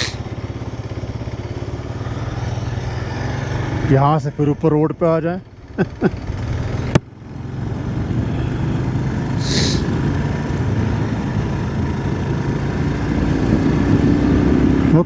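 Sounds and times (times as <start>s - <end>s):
brief hiss: 0.0s - 0.2s, 9.4s - 9.9s
motorcycle engine running: 0.0s - 15.0s
wind and road noise: 0.0s - 15.0s.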